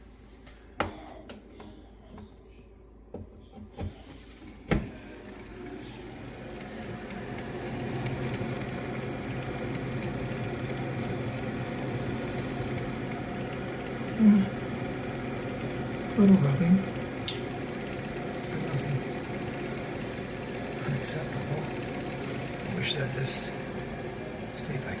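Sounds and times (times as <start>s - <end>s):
fan motor humming: 0.0s - 25.0s
sharp click: 17.2s - 17.5s.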